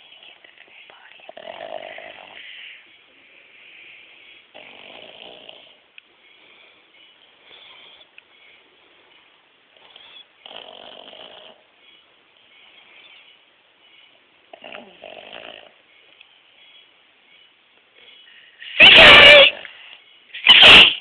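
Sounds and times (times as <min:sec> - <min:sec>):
dog snoring: 0:00.0 - 0:02.5, 0:04.5 - 0:05.8, 0:09.8 - 0:11.7, 0:14.5 - 0:15.8.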